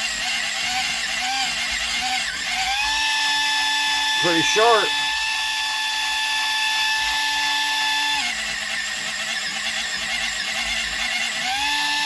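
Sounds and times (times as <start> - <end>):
pencil sharpener motor whining: 0.0 - 12.0.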